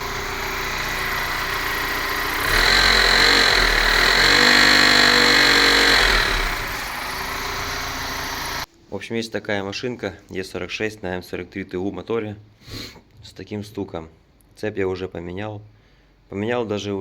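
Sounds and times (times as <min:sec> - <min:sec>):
knocking car engine revving: 0:00.0 - 0:08.7.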